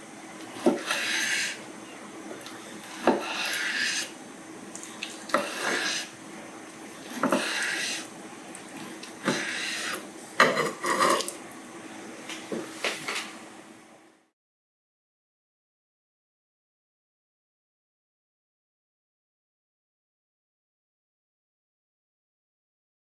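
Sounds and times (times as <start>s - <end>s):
faint steady hum: 0.0s - 14.3s
hard edge scraping a surface: 0.6s - 1.6s, 2.9s - 4.1s, 5.4s - 6.1s, 7.2s - 8.1s, 9.2s - 11.3s.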